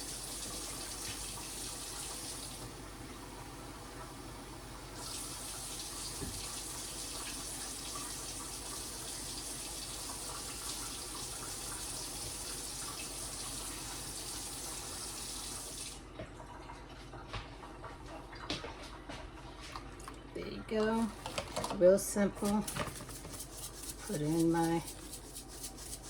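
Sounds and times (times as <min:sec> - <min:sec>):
kitchen tap running: 0:00.0 - 0:16.0, 0:22.4 - 0:26.0
water filling a container: 0:00.0 - 0:17.1.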